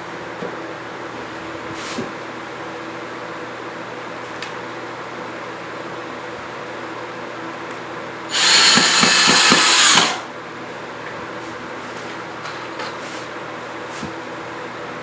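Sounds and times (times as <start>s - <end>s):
power drill running: 8.3s - 10.3s.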